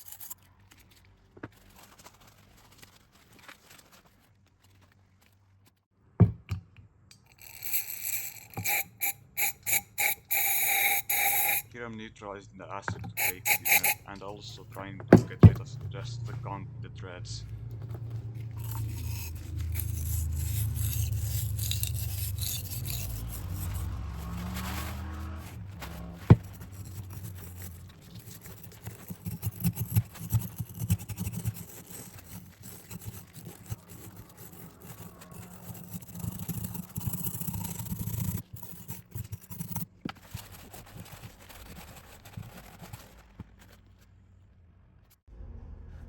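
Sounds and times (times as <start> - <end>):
scrubbing and scraping metal: 0.0 - 0.9, 7.3 - 11.8, 12.8 - 16.6, 17.5 - 44.2.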